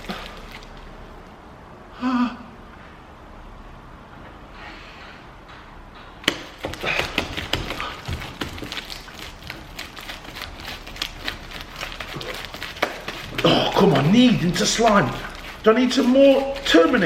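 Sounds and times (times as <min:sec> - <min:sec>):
slime being kneaded by hand: 0:00.0 - 0:01.4, 0:06.2 - 0:17.0.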